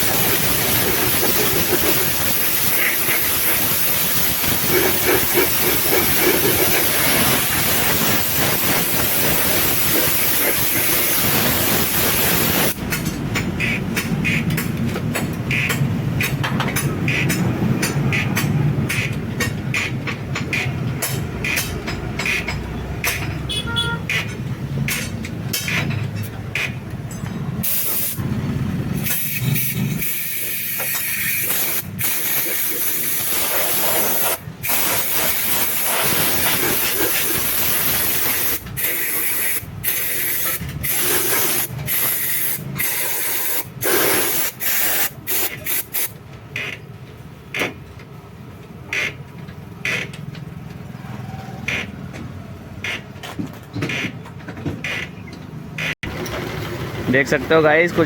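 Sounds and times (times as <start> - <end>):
high-pressure jet hissing: 0.0 - 12.8, 27.6 - 46.1.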